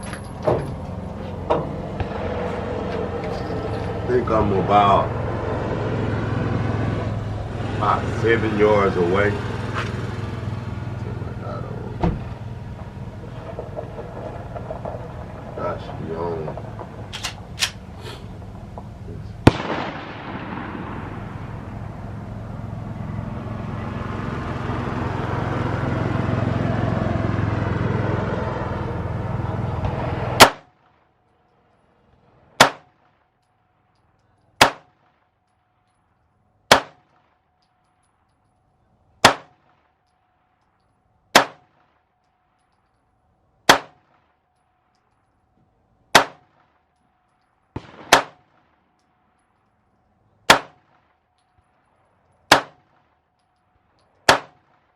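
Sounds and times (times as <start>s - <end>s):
pistol shots: 19.4s - 21.1s, 30.4s - 30.8s, 32.6s - 33.1s, 34.6s - 35.2s, 36.7s - 37.3s, 39.2s - 39.8s, 41.3s - 41.9s, 43.6s - 44.2s, 46.1s - 46.8s, 47.7s - 48.8s, 50.4s - 51.1s, 52.5s - 53.1s, 54.2s - 54.9s.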